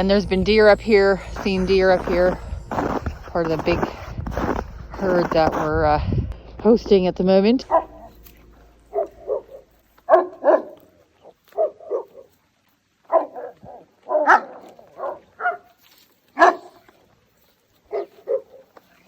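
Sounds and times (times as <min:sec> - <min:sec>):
dog barking: 0:08.9 - 0:10.8, 0:11.5 - 0:12.3, 0:13.1 - 0:15.8, 0:16.4 - 0:16.8, 0:17.9 - 0:18.8.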